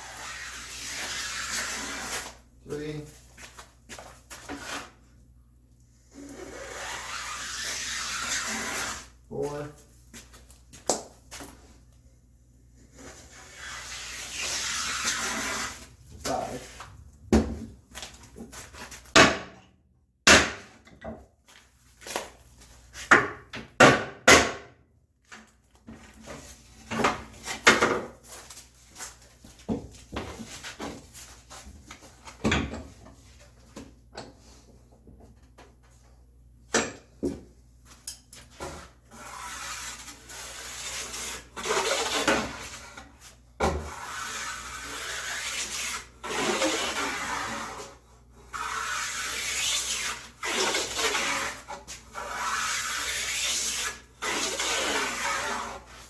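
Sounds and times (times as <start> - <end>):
plane blade shaving wood: 6.3 - 9.1, 39.1 - 43.0, 43.9 - 56.0
hand plane strokes and knocks: 43.6 - 47.9.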